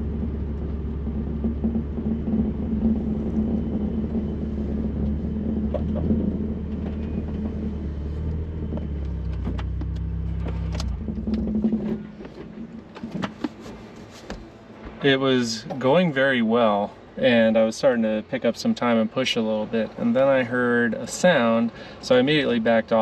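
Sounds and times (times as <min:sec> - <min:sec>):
car engine running: 0:00.0 - 0:13.5.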